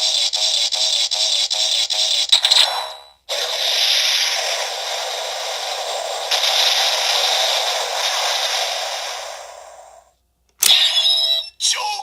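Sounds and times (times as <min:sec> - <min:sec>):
toy belt hissing sound effect: 0:03.3 - 0:10.1.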